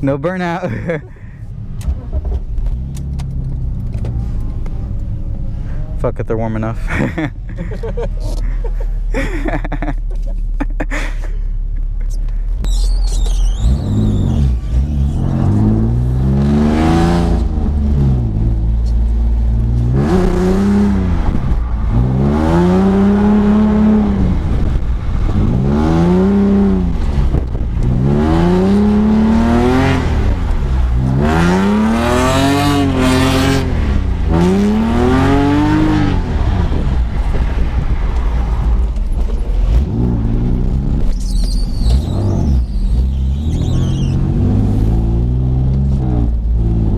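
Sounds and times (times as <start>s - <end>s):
car engine revving: 11.7s - 46.9s.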